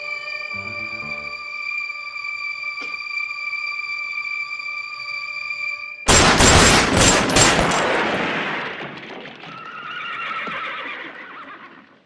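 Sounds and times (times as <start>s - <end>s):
rapid gunshots echoing: 6.1s - 9.5s
horse whinnying: 9.5s - 12.0s.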